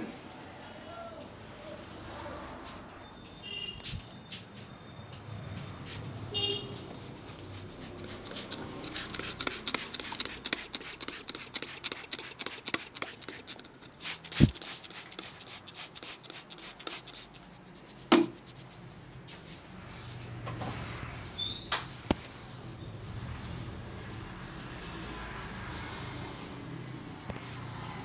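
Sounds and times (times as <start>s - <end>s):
hands tapping and slapping a head: 18.1s - 18.4s.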